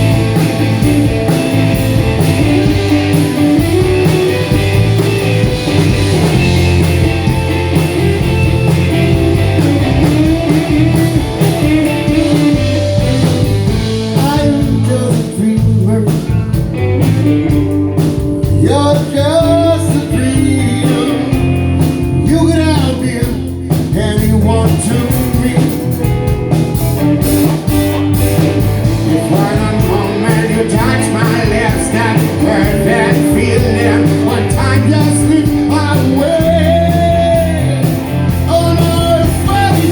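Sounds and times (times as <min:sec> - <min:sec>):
lead guitar bending notes: 0:00.0 - 0:14.2
blues-rock band playing: 0:00.0 - 0:39.9.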